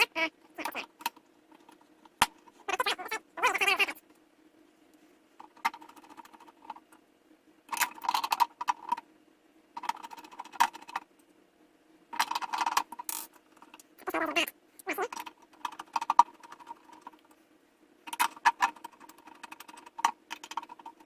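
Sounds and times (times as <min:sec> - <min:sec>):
faint steady hum: 0:00.0 - 0:21.0
small hard parts clicking and rattling: 0:05.4 - 0:07.0, 0:07.7 - 0:09.0, 0:09.8 - 0:11.1, 0:12.1 - 0:14.2, 0:14.8 - 0:17.4, 0:18.0 - 0:21.0.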